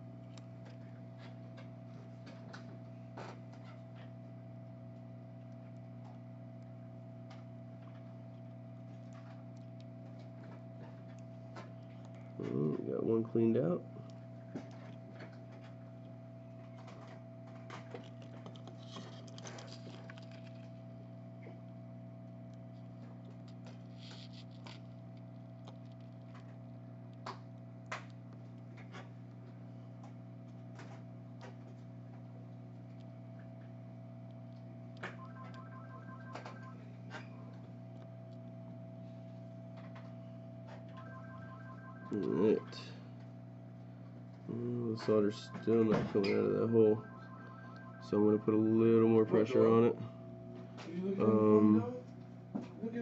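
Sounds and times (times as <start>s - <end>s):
steady electrical hum: 0.0s - 53.0s
faint high whine: 35.0s - 37.6s, 40.7s - 43.2s, 44.4s - 50.2s
rapid electronic pips: 35.2s - 36.8s, 41.0s - 42.8s, 45.0s - 49.6s.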